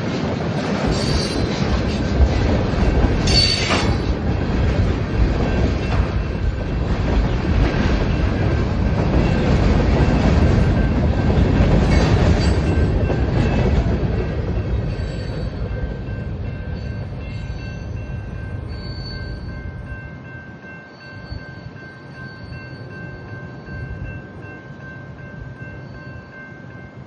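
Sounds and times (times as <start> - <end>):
wheels clicking over rail joints: 0.0 - 16.0
train wheels rumbling on rails: 0.0 - 27.0.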